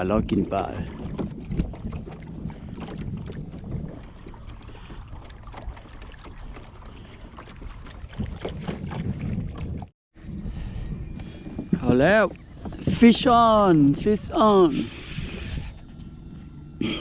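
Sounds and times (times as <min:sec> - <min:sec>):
wind rumbling on microphone: 0:00.0 - 0:17.0
kayak clicks and knocks: 0:01.0 - 0:03.8.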